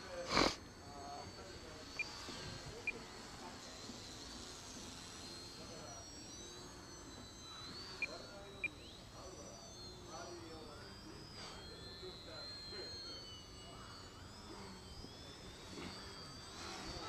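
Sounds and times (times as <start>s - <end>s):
small rc planes whining: 0.0s - 17.0s
short high beeps: 5.6s - 17.0s.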